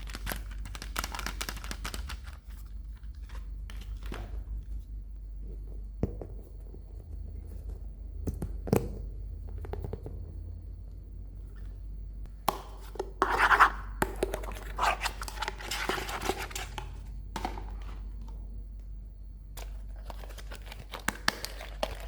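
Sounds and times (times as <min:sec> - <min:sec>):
plastic packaging crinkling and tearing: 0:00.0 - 0:04.3, 0:19.6 - 0:22.0.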